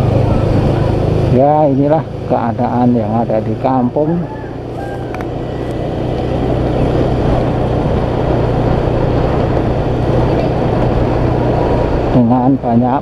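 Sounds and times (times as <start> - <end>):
motorcycle engine running: 0.0 - 13.0.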